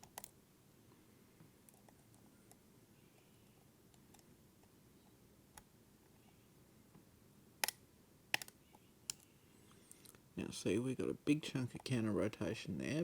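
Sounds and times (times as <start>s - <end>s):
lock clicks: 7.6s - 9.2s.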